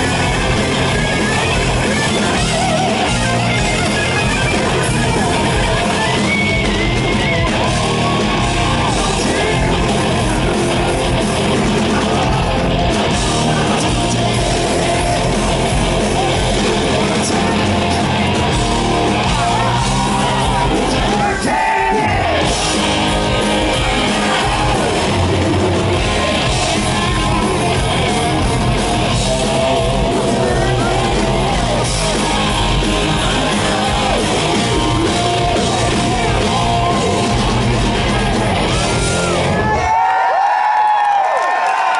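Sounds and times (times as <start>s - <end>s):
electric guitars: 0.0s - 40.1s
bass guitar: 0.0s - 41.0s
drums: 0.0s - 41.9s
man singing: 7.7s - 18.6s, 19.2s - 25.3s, 25.9s - 38.6s.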